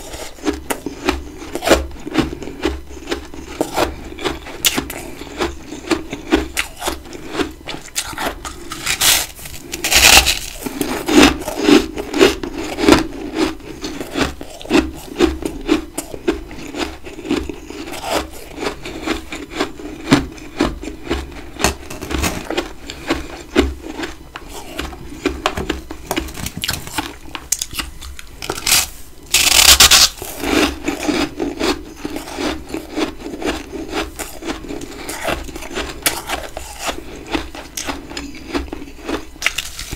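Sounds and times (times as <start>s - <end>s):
chewing crunchy frost: 0.0s - 39.9s.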